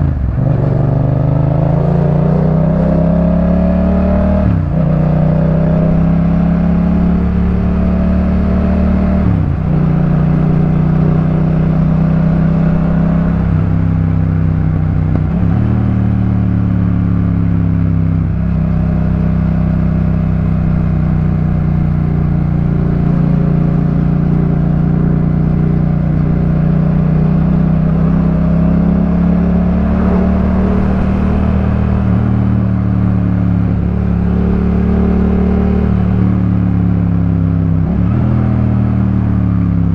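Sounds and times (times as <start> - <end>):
motorcycle engine running: 9.2 - 39.9.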